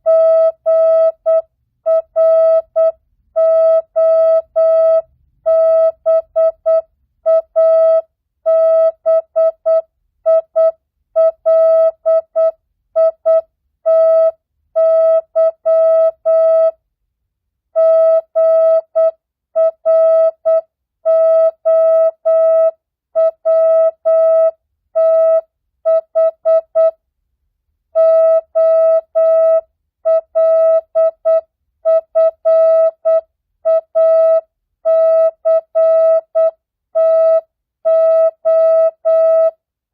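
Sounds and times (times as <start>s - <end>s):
morse code beeps: 0.1s - 16.7s, 28.0s - 39.6s.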